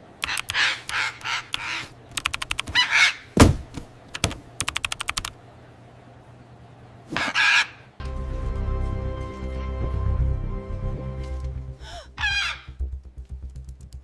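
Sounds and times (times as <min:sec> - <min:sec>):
computer keyboard typing: 0:00.2 - 0:00.6, 0:01.5 - 0:02.8, 0:04.1 - 0:05.4
raspy bird squawks: 0:00.2 - 0:02.0, 0:02.6 - 0:03.4, 0:07.2 - 0:07.9, 0:12.2 - 0:12.8
heavy thunk: 0:03.4 - 0:03.9.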